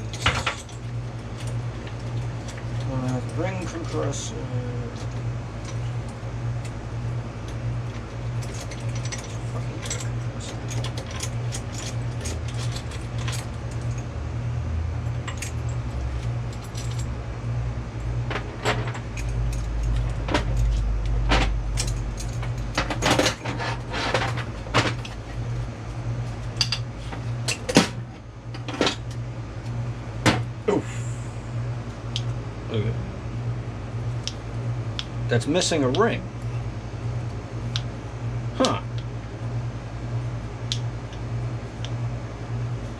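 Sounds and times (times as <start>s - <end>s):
steady low hum: 0.0s - 42.9s
metal tools clinking: 8.4s - 14.0s, 21.7s - 25.4s.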